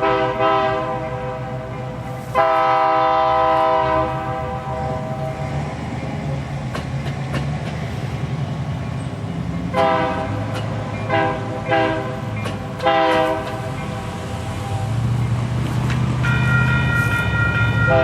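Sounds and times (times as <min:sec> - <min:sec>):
locomotive air horn: 0:00.0 - 0:05.6, 0:09.7 - 0:13.8, 0:16.2 - 0:18.0
diesel engine rumbling: 0:00.0 - 0:18.0
wheels clicking over rail joints: 0:05.5 - 0:18.0.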